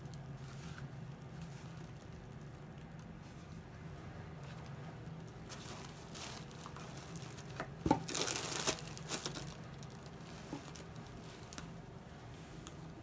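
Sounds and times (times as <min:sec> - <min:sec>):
packing paper crinkling: 0:04.5 - 0:11.9.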